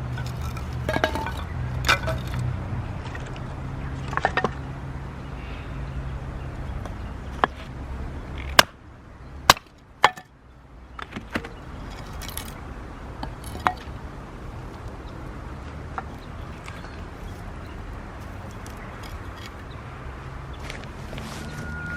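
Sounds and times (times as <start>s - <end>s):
firewood being chopped: 0.2s - 2.4s, 8.5s - 8.8s, 9.5s - 10.3s.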